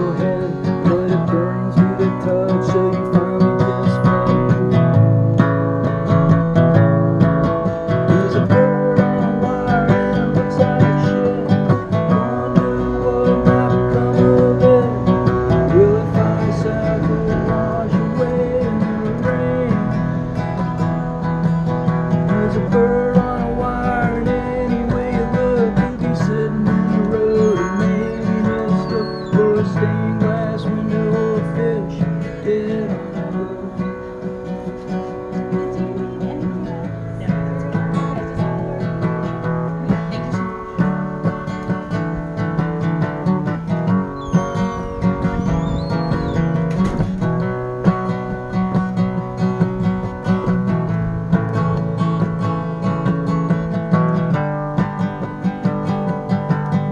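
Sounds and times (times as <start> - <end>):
acoustic guitar strumming: 0.0 - 56.9
wavering melody line: 44.1 - 46.6.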